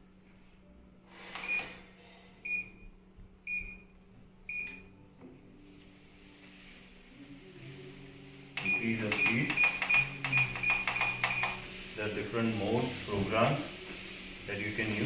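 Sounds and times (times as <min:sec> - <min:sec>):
short high beeps: 0:08.6 - 0:11.6.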